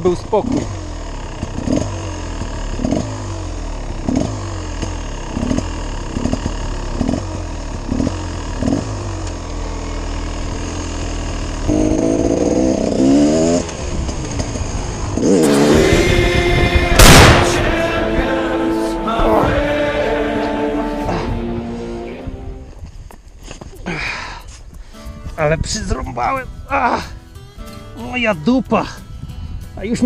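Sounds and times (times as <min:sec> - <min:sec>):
two-stroke motorcycle engine revving: 0:00.0 - 0:18.7.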